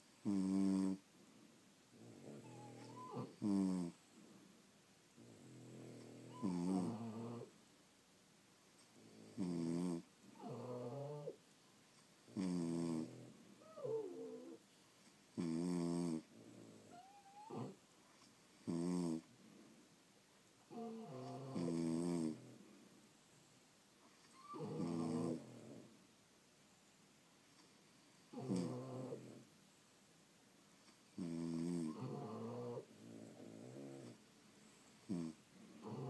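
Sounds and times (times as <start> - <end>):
dogs snoring: 0.0 - 1.1, 1.9 - 4.4, 5.2 - 7.6, 8.9 - 11.4, 12.2 - 14.6, 15.3 - 17.8, 18.5 - 19.3, 20.7 - 22.7, 24.2 - 26.0, 27.6 - 29.5, 30.8 - 36.0.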